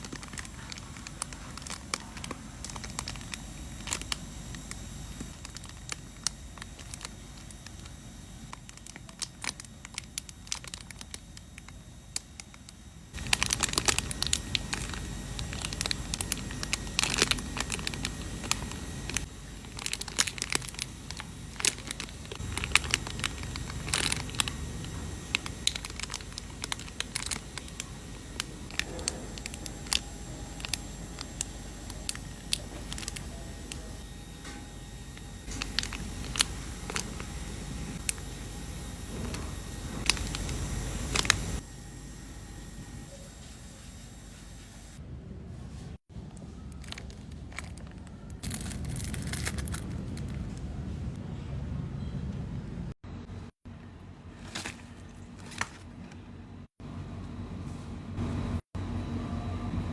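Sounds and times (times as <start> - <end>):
plastic packaging crinkling: 0.0 - 33.9, 35.4 - 38.5, 39.1 - 41.6, 46.2 - 50.8, 54.3 - 56.3.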